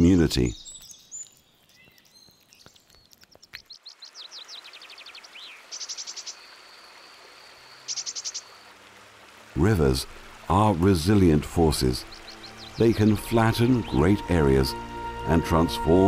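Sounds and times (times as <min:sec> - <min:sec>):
birds chirping: 0:00.0 - 0:08.8, 0:09.5 - 0:16.0
running water hiss: 0:03.6 - 0:16.0.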